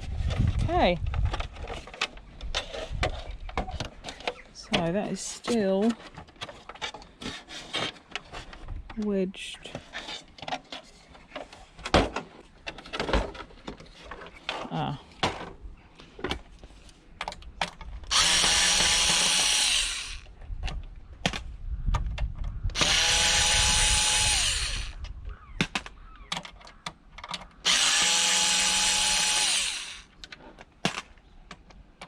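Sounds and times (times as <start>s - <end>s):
cordless drill motor whine: 18.1s - 20.3s, 22.7s - 25.1s, 27.6s - 30.2s
handling clicks and knocks: 25.6s - 27.6s, 30.1s - 32.0s.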